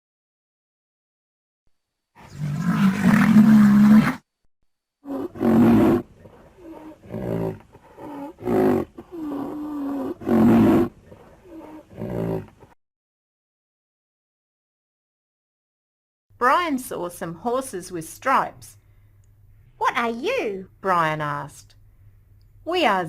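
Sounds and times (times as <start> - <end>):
rhinoceros bellowing: 2.2 - 4.2, 5.0 - 12.7
rhinoceros breathing: 5.1 - 12.8.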